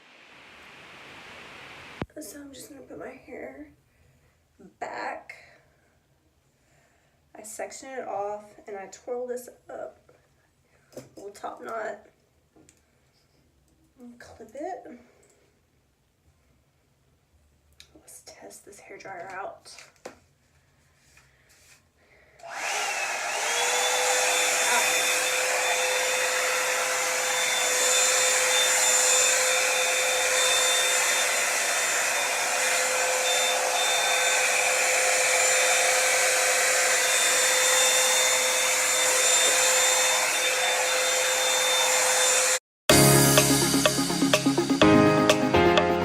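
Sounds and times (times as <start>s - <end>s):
hair dryer brush running: 22.4s - 46.0s.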